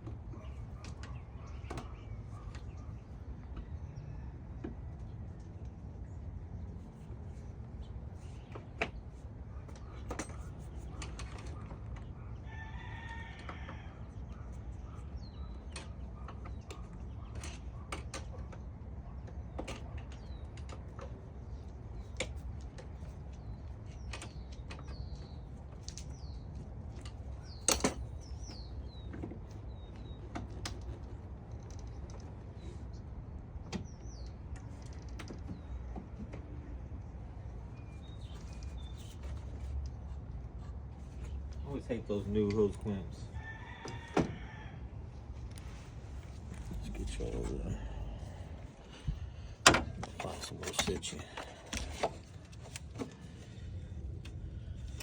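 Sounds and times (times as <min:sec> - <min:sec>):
small birds chirping: 0:00.3 - 0:04.3, 0:14.1 - 0:43.8, 0:45.6 - 0:55.0.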